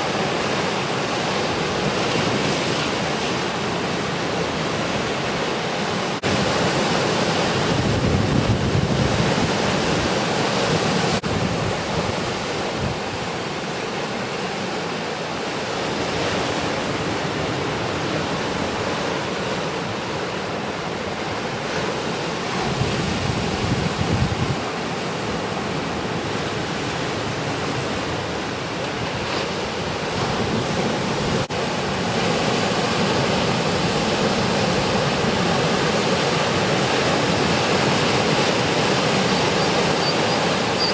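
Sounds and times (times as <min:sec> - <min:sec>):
ocean waves roaring: 0:00.0 - 0:40.9
wind gusting on microphone: 0:06.2 - 0:13.5, 0:17.2 - 0:27.9.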